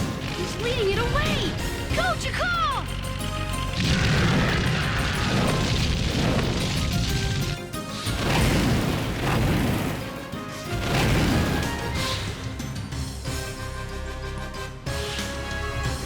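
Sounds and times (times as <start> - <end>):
booming crashing sound effects: 0.0 - 2.1, 3.6 - 13.3
action cartoon score: 0.0 - 16.0.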